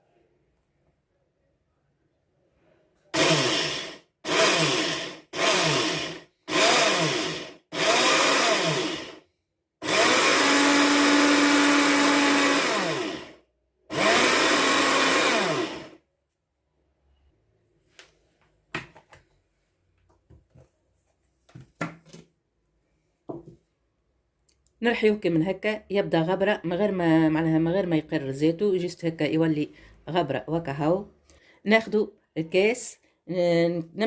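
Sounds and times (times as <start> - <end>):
electric grinder grinding seeds: 3.2 - 9.2, 9.8 - 16.0.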